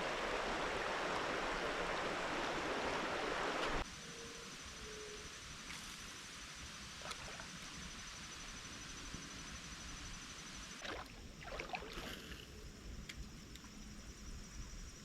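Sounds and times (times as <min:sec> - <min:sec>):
river water flowing: 0:00.0 - 0:03.8, 0:10.8 - 0:12.4
splashing or knocking: 0:10.8 - 0:12.3.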